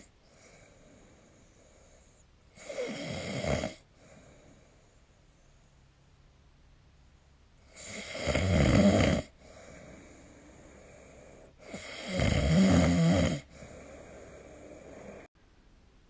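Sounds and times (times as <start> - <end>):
soft long breath: 0.2 - 2.3, 3.9 - 5.8, 9.4 - 11.8, 13.5 - 15.3
person snoring: 2.6 - 4.6, 7.7 - 15.3.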